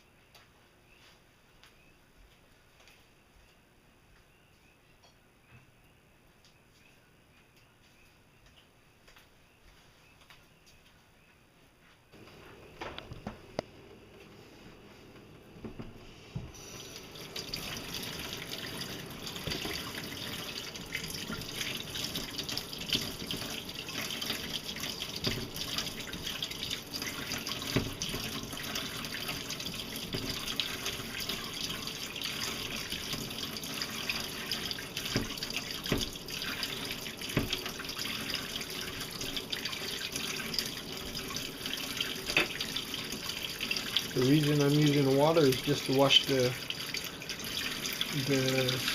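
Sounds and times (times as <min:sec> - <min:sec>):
tap water running into sink: 0:15.6 - 0:48.9.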